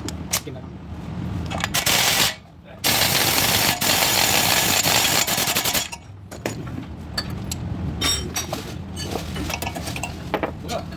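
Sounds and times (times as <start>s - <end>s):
pneumatic tool hammering: 1.7s - 6.0s.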